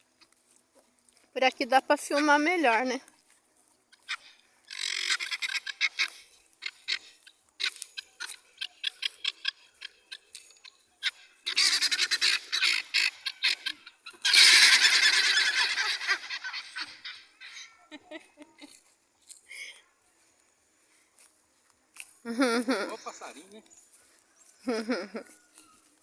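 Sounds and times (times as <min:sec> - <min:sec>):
flock of birds squawking: 0:04.0 - 0:18.0.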